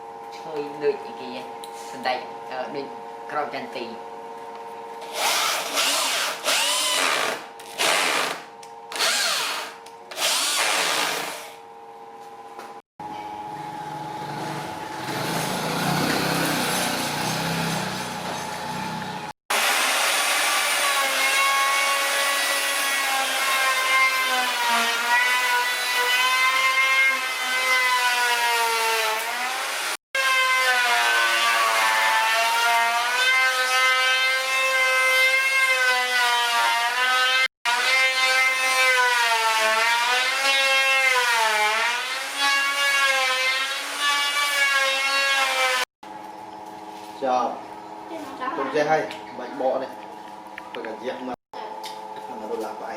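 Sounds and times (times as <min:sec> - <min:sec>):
power tool cutting wood: 0:05.0 - 0:11.6, 0:14.2 - 0:45.9.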